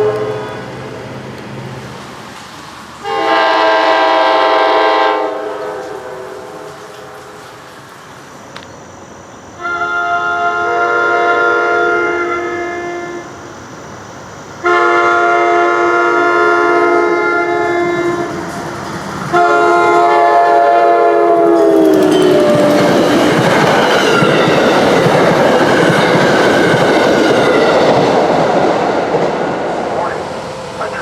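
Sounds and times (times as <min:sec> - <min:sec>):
train air horn blasts: 0:00.0 - 0:00.7, 0:03.0 - 0:07.5, 0:09.6 - 0:13.3, 0:14.6 - 0:18.4, 0:19.3 - 0:22.9
train rushing past: 0:00.0 - 0:31.0
train wheel clatter: 0:17.9 - 0:19.4, 0:21.3 - 0:30.2.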